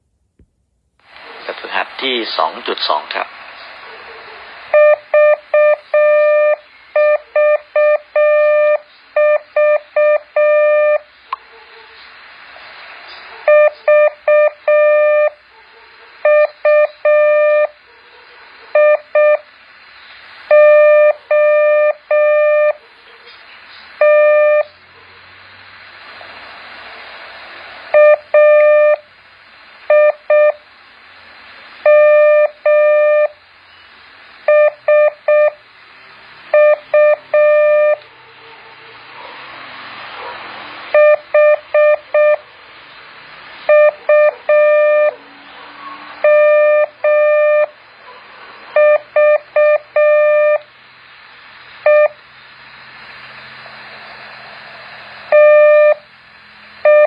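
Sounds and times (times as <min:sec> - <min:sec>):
steady background hiss: 0:00.0 - 0:56.9
morse code beeps: 0:04.7 - 0:11.0, 0:13.5 - 0:15.4, 0:16.2 - 0:17.7, 0:18.8 - 0:19.4, 0:20.5 - 0:22.8, 0:24.0 - 0:24.7, 0:28.0 - 0:29.0, 0:31.9 - 0:33.3, 0:34.5 - 0:35.6, 0:36.5 - 0:38.0, 0:41.0 - 0:42.4, 0:43.7 - 0:45.2, 0:46.2 - 0:47.8, 0:48.8 - 0:50.6, 0:51.9 - 0:52.2, 0:55.3 - 0:56.0.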